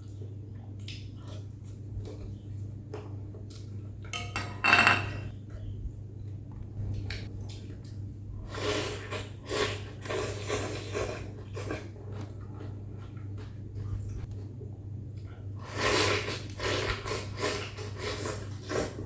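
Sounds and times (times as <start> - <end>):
steady low hum: 0.0 - 19.0
slurping noodles: 8.5 - 11.9, 15.6 - 19.0.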